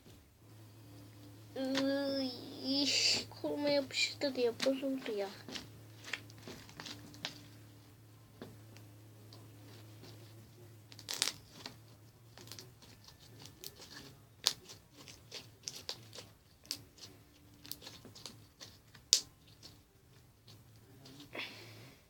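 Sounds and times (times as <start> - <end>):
faint low hum: 0.0 - 22.0
slime snapping: 13.7 - 19.6
slime clicking and popping: 15.6 - 19.3.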